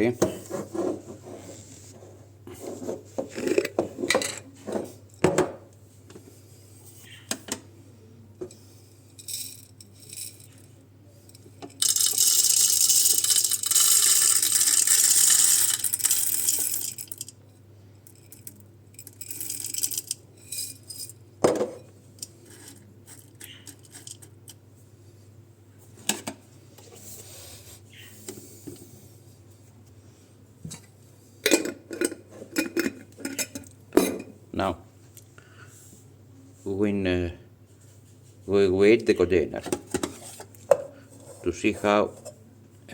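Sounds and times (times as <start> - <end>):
coffee beans rattling: 9.0 - 10.8, 11.4 - 17.4, 18.0 - 21.2, 22.4 - 24.6.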